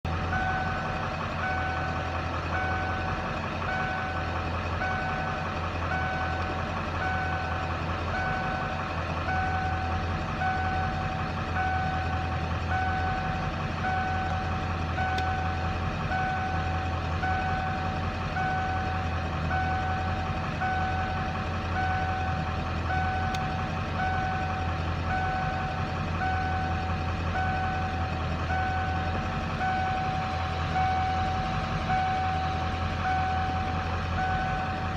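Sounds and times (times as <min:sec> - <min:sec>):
diesel engine idling roughly: 0:00.0 - 0:34.9
electronic warning beeps: 0:09.3 - 0:34.9.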